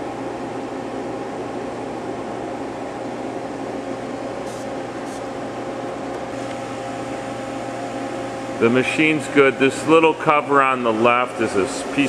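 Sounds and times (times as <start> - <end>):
lathe machine humming: 4.4 - 12.0.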